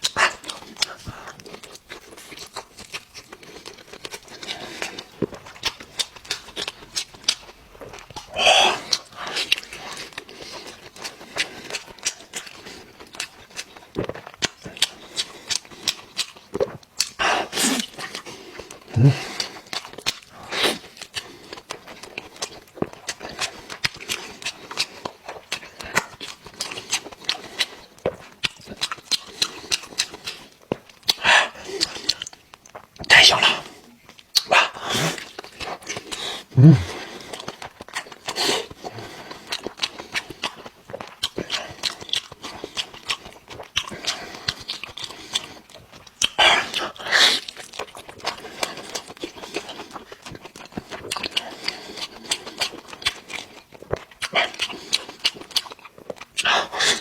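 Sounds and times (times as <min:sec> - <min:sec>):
close-miked chewing: 0:00.0 - 0:57.0
short low vocal sound: 0:19.0 - 0:19.2, 0:36.6 - 0:37.0.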